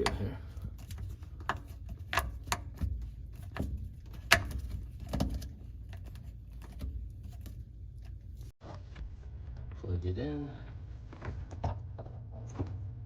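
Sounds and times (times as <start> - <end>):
bolts clicking and knocking: 0.0 - 8.5.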